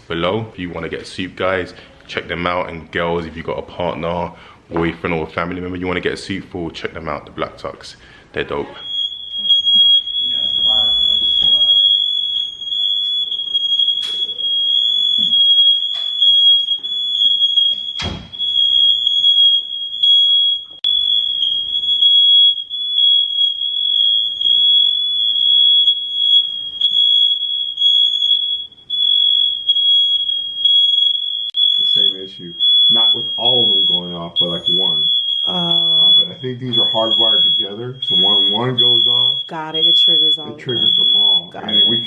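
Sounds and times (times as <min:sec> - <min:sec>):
smoke alarms shrieking: 0:08.7 - 0:42.0.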